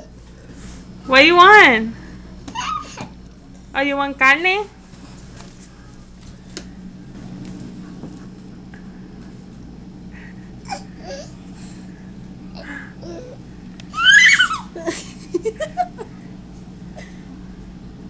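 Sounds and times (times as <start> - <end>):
steady low hum: 0.0 - 18.0
baby squealing: 13.9 - 14.7.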